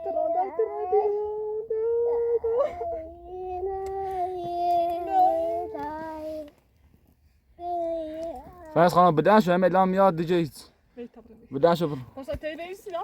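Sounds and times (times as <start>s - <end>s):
high-pitched voice wailing: 0.0s - 5.9s.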